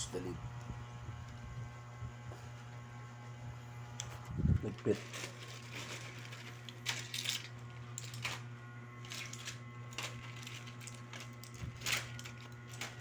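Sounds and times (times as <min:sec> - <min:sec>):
steady low hum: 0:00.0 - 0:13.0
objects clicking and knocking: 0:04.8 - 0:13.0.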